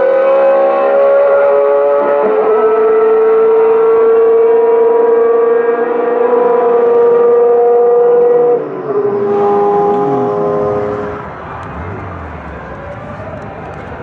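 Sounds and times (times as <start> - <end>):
racing car engine at high revs: 0.0 - 14.0
second engine rising and falling: 6.4 - 14.0.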